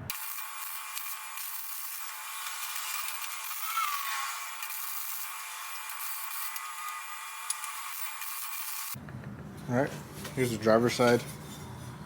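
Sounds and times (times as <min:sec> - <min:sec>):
power tool grinding: 0:00.0 - 0:09.0.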